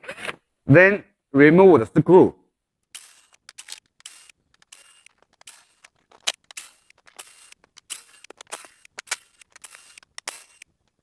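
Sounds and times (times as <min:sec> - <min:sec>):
screwdriver backing out screws: 0:02.9 - 0:11.0.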